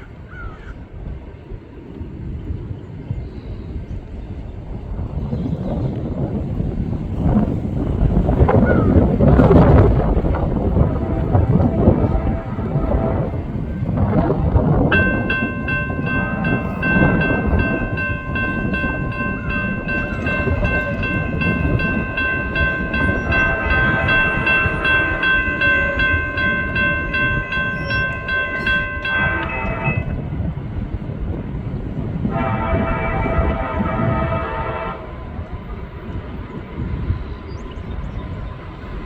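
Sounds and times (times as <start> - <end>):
train rumble: 0.0 - 39.0
crossing bell dinging: 9.5 - 30.5
train air horn chord: 10.4 - 30.2, 32.2 - 35.4.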